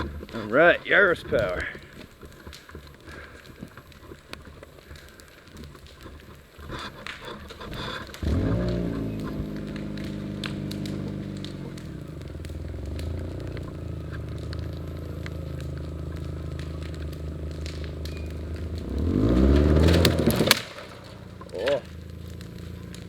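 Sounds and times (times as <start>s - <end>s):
small crackles: 0.0s - 23.0s
car engine under load: 6.6s - 23.0s.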